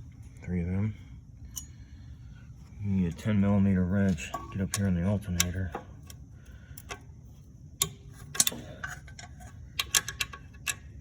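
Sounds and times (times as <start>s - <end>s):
wrench clicking on nut: 7.8s - 10.9s.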